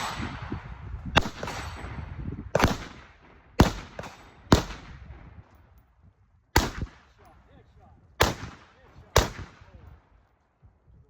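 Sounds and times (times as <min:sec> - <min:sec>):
rifle shots echoing: 0:00.0 - 0:05.6, 0:06.5 - 0:07.4, 0:08.2 - 0:10.2.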